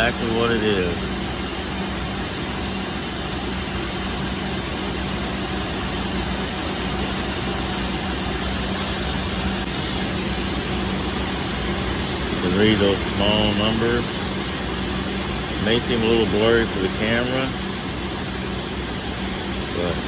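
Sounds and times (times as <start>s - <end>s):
constant low hum: 0.0s - 20.0s
ventilation air rush: 0.0s - 20.0s.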